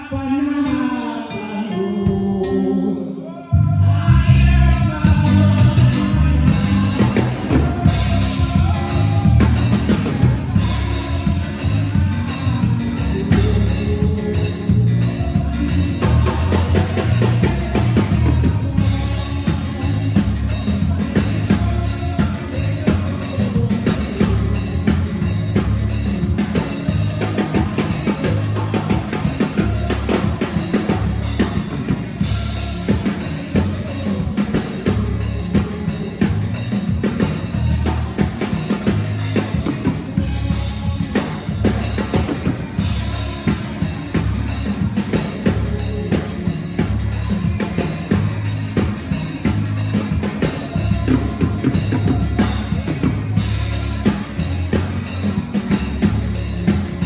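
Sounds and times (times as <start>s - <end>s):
heavy bass line: 3.5s - 57.0s
drum kit steady beat: 4.2s - 57.0s.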